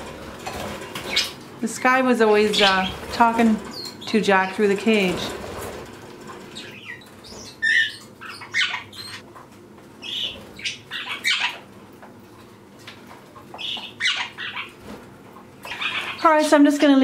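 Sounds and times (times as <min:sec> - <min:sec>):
budgerigars chirping: 0:01.0 - 0:01.4, 0:02.4 - 0:04.6, 0:06.5 - 0:09.2, 0:10.0 - 0:11.7, 0:13.5 - 0:14.8, 0:15.6 - 0:16.4.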